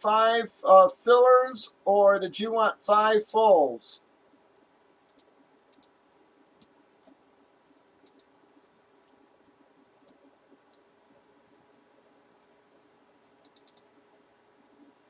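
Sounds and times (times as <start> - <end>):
faint clicks: 5.0 - 6.0, 8.0 - 9.2, 10.0 - 10.9, 13.4 - 14.0.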